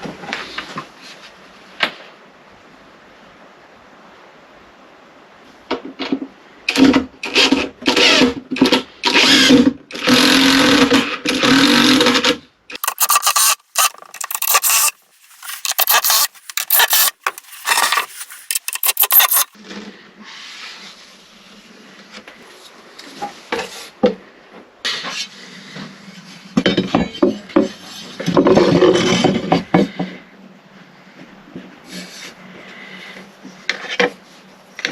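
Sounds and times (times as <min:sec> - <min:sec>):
wood being rasped: 0:12.8 - 0:19.6.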